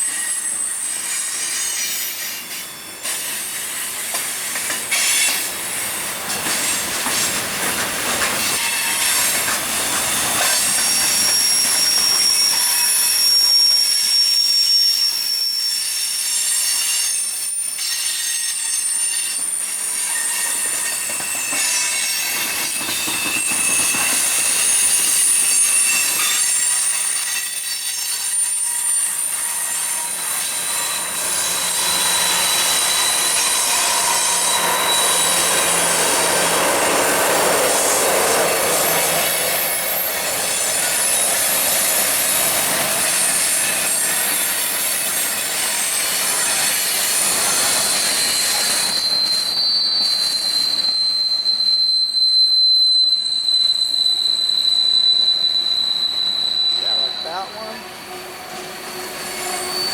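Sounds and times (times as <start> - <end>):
rushing noise of train: 0.0 - 59.9
train wheels squealing: 0.0 - 59.9.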